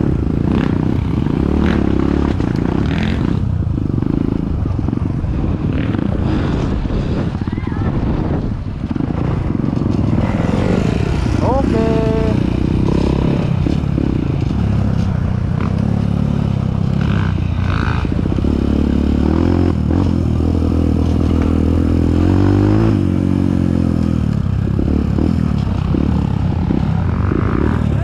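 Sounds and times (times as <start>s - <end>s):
dirt bike engine revving: 0.0s - 7.3s, 8.8s - 28.0s.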